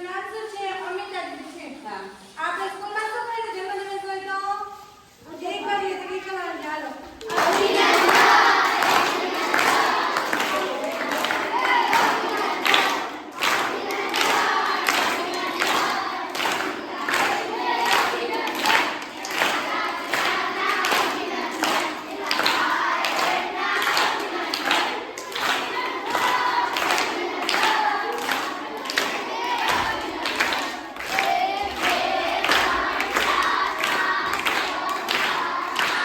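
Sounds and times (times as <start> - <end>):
children clapping in time: 7.0 - 36.0
children singing in chorus: 7.2 - 36.0.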